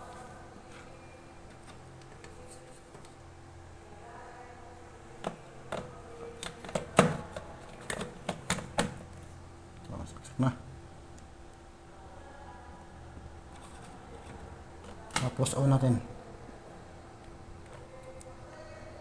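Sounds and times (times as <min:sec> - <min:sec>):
coffee maker clicks and knocks: 0:05.2 - 0:09.1.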